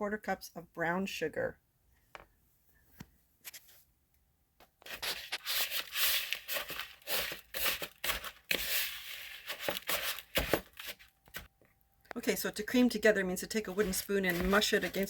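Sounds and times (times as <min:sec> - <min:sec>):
wooden spoon scraping a bowl: 0:04.9 - 0:11.5, 0:13.6 - 0:15.0.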